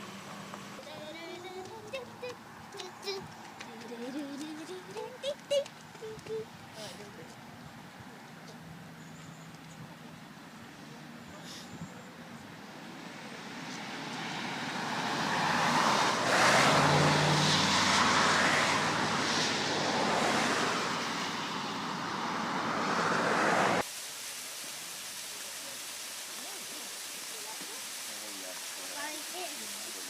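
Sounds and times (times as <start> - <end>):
flowing water rushing: 0.0 - 5.6, 22.0 - 30.0
vehicle passing on road: 0.0 - 11.2, 12.2 - 23.9.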